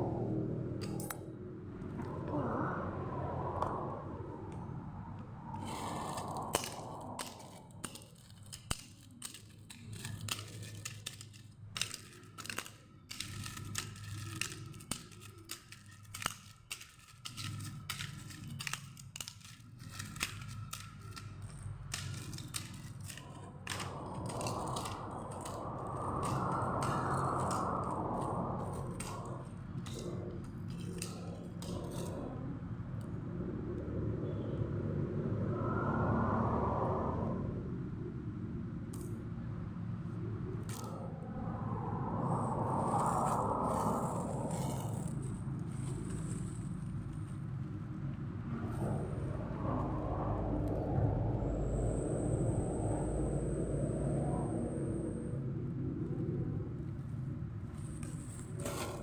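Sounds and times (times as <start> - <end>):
toy track parts clicking: 5.6 - 32.2.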